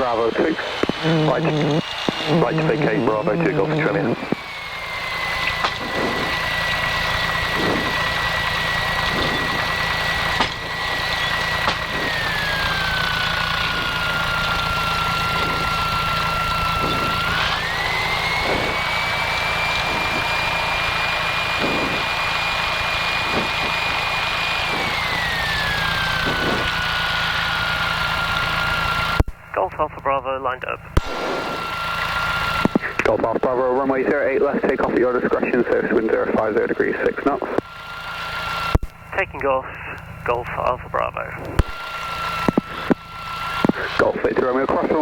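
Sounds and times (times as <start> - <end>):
light aircraft piston engine: 0.0 - 45.0.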